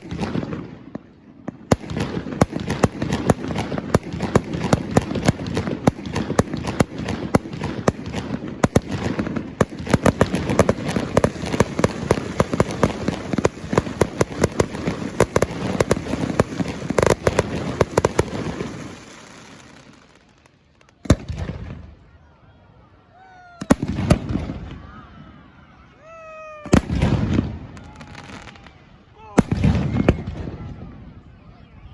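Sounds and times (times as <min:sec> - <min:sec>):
fireworks bangs and crackles: 0:00.0 - 0:22.2, 0:23.6 - 0:25.4, 0:26.6 - 0:31.2.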